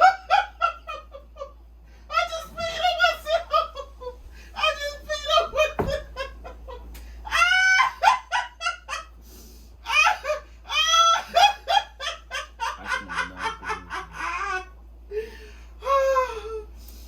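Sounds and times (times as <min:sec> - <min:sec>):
person laughing hard: 0:02.2 - 0:09.1, 0:09.9 - 0:14.7.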